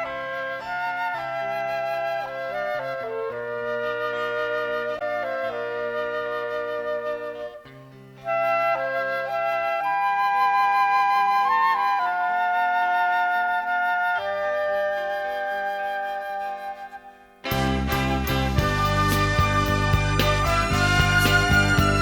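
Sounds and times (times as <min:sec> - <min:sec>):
flute-like melody: 0:00.0 - 0:22.0
sustained accompaniment chords: 0:16.8 - 0:22.0.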